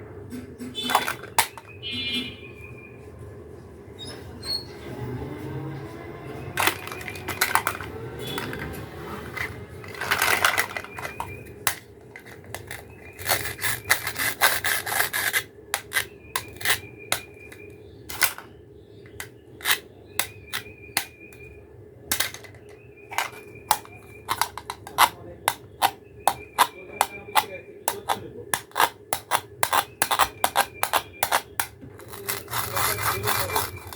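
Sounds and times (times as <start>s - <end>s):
plastic scraping and rubbing: 0.7s - 1.8s, 6.5s - 21.5s, 22.1s - 33.9s
plastic toy pieces clicking: 0.8s - 1.7s, 6.6s - 8.7s, 9.4s - 18.5s, 22.1s - 33.9s.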